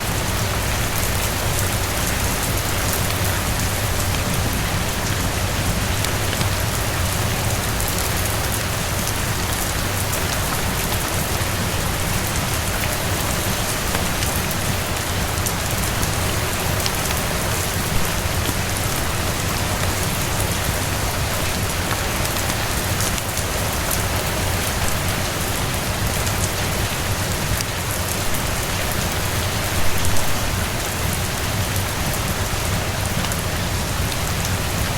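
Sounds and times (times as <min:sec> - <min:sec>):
rain falling on terrace: 0:00.0 - 0:34.9.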